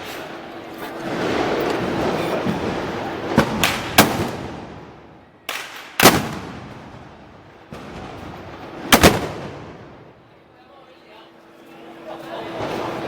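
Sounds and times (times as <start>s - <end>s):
gunpowder bangs echoing: 5.5s - 6.9s, 8.9s - 9.8s.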